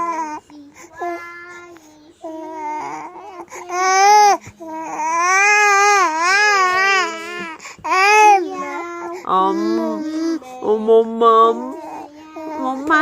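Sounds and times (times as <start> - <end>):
small child crying: 2.3 - 10.4.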